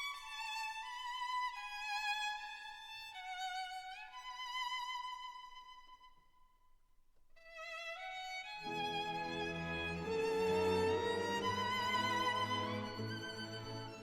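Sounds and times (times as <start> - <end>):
solo violin slow melody: 0.0 - 6.2, 7.4 - 14.0
lower accompaniment: 8.6 - 14.0.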